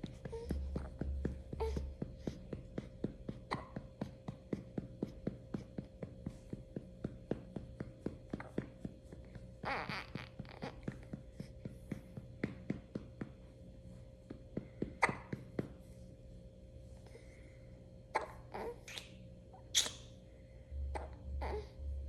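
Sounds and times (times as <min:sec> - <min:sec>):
light pats on baby's back: 0:00.0 - 0:16.0.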